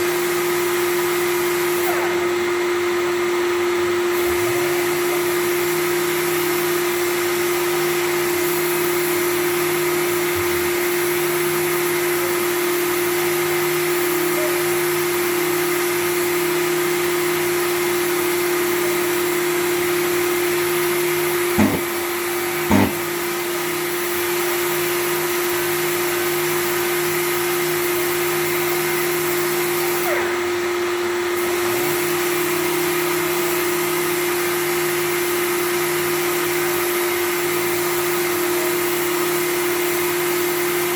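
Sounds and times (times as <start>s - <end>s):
short knocks: 21.6s - 21.9s, 22.7s - 23.0s
power sander running: 21.6s - 23.4s.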